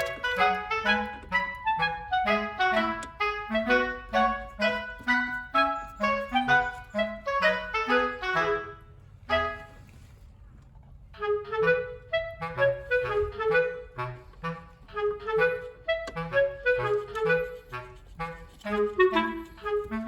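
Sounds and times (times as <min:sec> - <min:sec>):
light tune of clipped notes: 0:00.0 - 0:08.4, 0:13.0 - 0:20.0.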